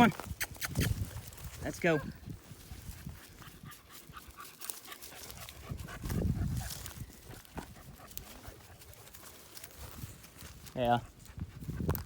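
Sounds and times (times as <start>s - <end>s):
paws rustling leaf litter: 0.9s - 11.3s
dog panting: 2.9s - 9.3s.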